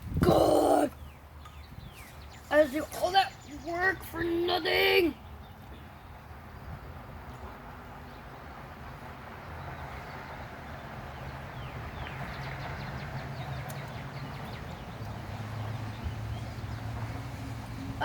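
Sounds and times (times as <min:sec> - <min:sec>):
birds chirping: 0:00.0 - 0:18.0.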